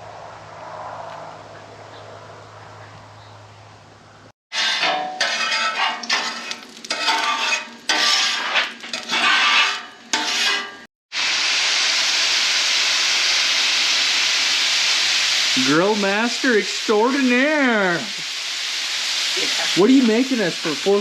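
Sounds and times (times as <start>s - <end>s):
metal spatula scraping griddle: 4.5s - 10.9s
food sizzling on griddle: 4.5s - 21.0s.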